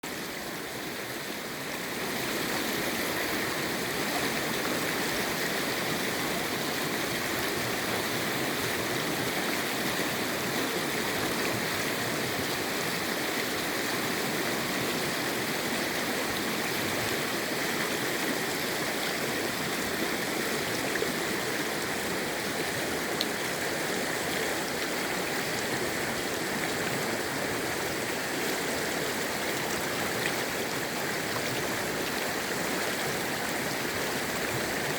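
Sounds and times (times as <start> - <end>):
stream rushing over rocks: 0.0 - 34.9.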